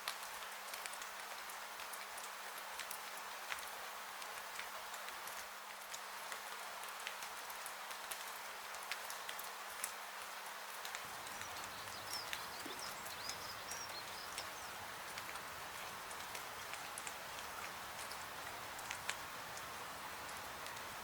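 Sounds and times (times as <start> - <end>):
rain hiss: 0.0 - 21.0
fireplace crackles: 11.0 - 21.0
faint high chirps: 11.1 - 19.7.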